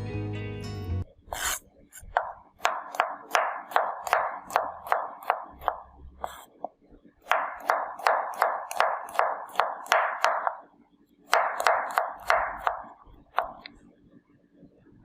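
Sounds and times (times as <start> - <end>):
knife chopping on cutting board: 1.3 - 10.6, 11.3 - 13.7.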